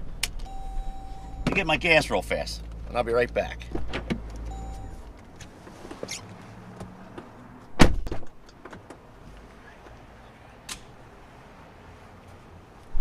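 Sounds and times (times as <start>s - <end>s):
car door thudding: 7.8s - 8.3s.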